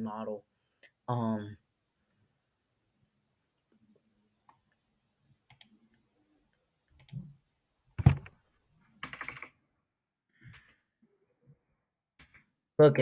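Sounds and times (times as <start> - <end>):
computer mouse clicks: 5.5 - 5.8, 7.0 - 7.3, 8.0 - 8.3
keyboard taps: 8.0 - 8.3
sharp knock: 8.0 - 8.3.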